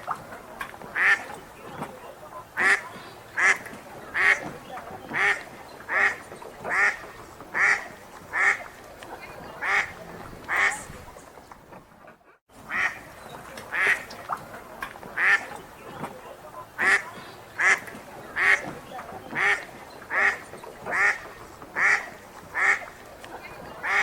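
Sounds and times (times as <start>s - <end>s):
duck quacking: 0.9s - 8.8s, 9.4s - 11.0s, 12.0s - 13.1s, 13.7s - 14.3s, 15.2s - 24.0s.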